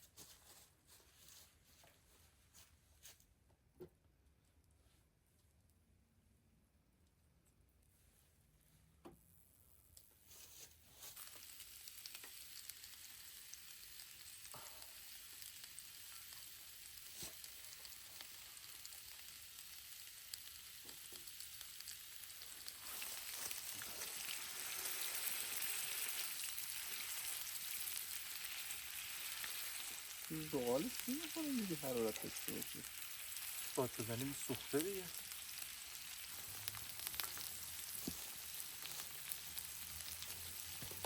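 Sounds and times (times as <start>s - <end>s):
food sizzling in a pan: 10.1s - 41.0s.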